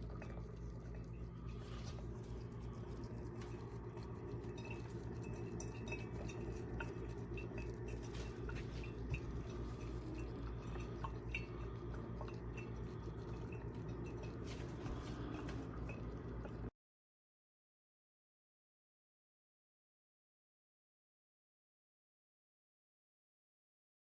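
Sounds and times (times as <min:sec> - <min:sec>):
steady low hum: 0:00.0 - 0:16.7
water dripping: 0:00.0 - 0:16.7
coffee maker popping and ticking: 0:03.0 - 0:16.1.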